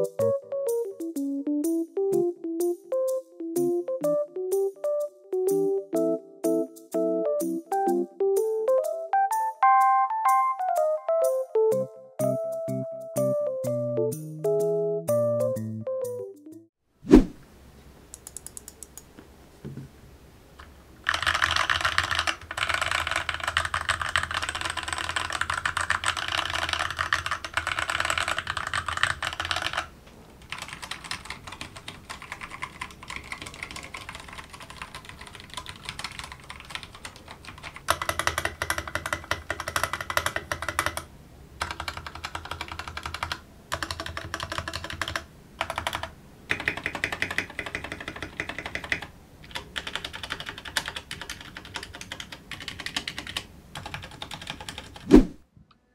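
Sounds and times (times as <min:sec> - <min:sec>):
mechanical keyboard typing: 0:21.0 - 0:55.0.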